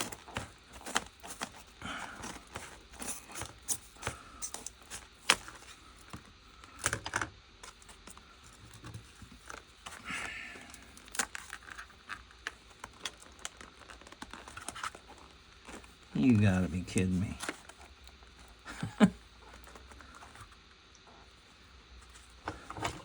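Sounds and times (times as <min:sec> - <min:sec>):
crinkling plastic: 0:00.0 - 0:23.0
plastic packaging clicks and taps: 0:02.2 - 0:08.2.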